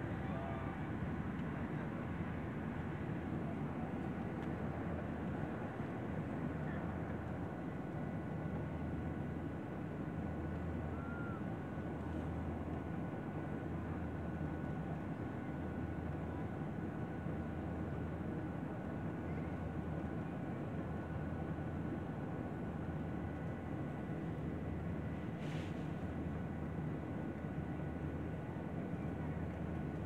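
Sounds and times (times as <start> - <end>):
airliner engine drone: 0.0 - 30.0
rushing air in cabin: 25.0 - 26.3.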